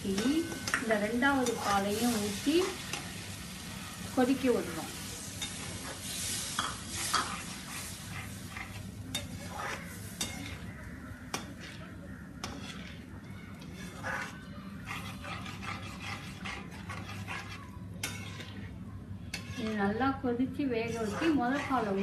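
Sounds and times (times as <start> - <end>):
spoon scraping and clinking in pan: 0.0 - 3.1, 5.3 - 10.7, 12.4 - 18.7, 19.3 - 19.8.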